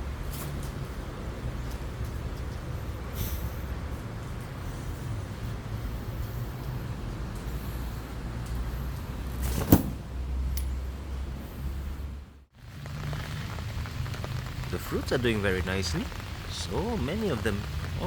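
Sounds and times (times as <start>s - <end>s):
steady rain falling: 12.5s - 18.0s.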